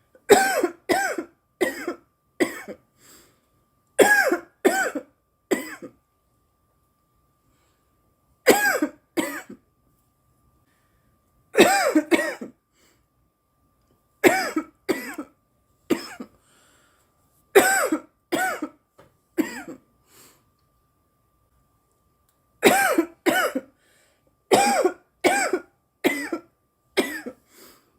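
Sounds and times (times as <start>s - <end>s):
woman coughing: 0.3s - 2.8s, 4.0s - 6.0s, 8.5s - 9.6s, 11.6s - 12.6s, 14.2s - 15.3s, 15.9s - 16.3s, 17.6s - 18.8s, 19.4s - 19.8s, 22.6s - 23.7s, 24.5s - 27.4s.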